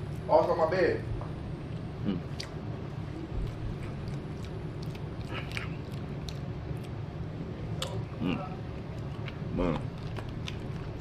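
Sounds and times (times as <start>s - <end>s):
person chewing food: 1.7s - 2.6s, 3.4s - 7.0s, 7.8s - 11.0s.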